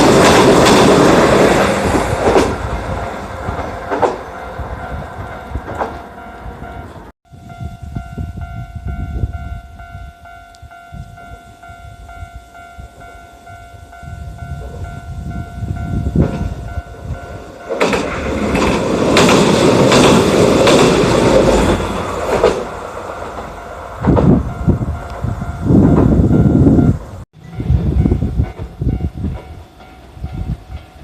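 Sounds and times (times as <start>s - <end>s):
tram wheels clacking over rail joints: 0.0s - 7.1s, 16.0s - 31.0s.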